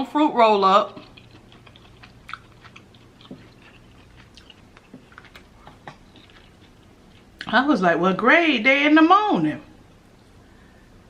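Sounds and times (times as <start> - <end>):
person chewing food: 0.8 - 7.5.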